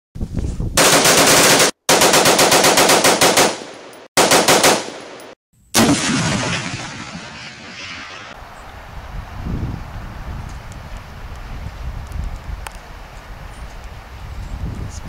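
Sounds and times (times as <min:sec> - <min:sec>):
rapid automatic gunfire: 0:00.8 - 0:05.0.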